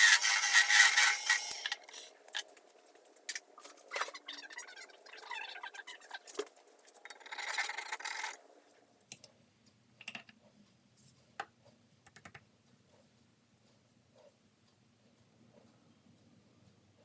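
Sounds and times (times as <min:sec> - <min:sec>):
file rubbing on wood: 0:00.0 - 0:02.1.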